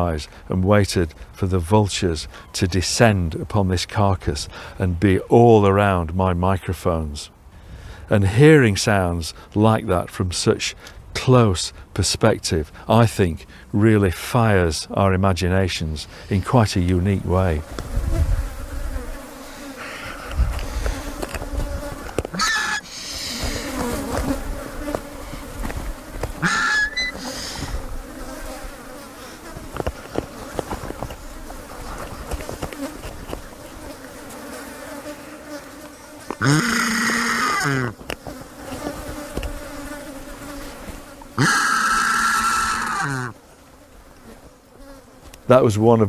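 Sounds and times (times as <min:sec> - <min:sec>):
vultures squealing calls: 0:22.3 - 0:23.8, 0:26.4 - 0:27.8, 0:36.4 - 0:38.0, 0:41.4 - 0:43.4.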